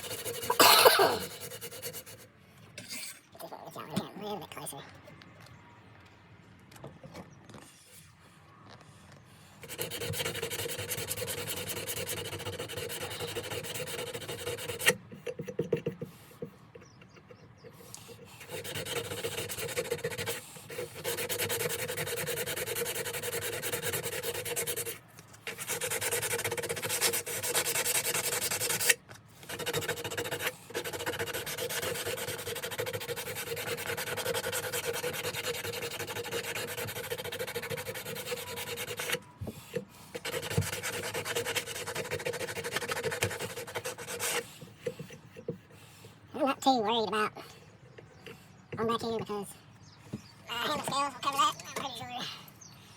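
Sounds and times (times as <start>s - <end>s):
sandpaper rubbing on knife blade: 0.0s - 2.2s, 9.6s - 16.0s, 16.7s - 45.8s.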